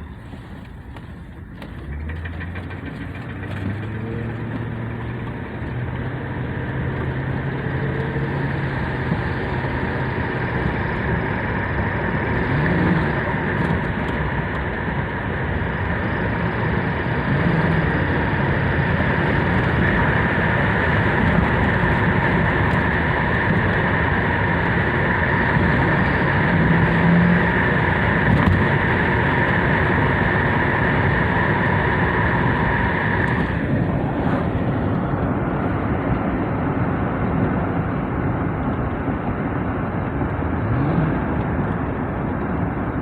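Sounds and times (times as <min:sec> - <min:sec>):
car engine running: 0:00.0 - 0:43.0
road noise: 0:00.0 - 0:43.0
whirring whine: 0:00.0 - 0:43.0.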